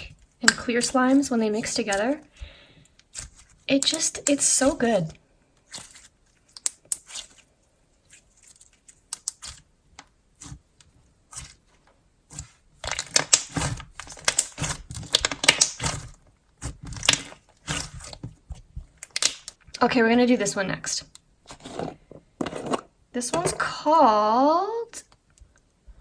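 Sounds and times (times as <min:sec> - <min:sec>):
slime squished by hand: 0:12.3 - 0:19.6.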